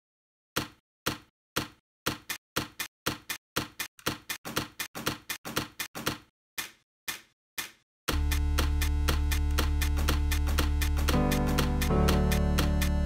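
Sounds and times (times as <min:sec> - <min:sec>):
music: 0:08.1 - 0:13.0.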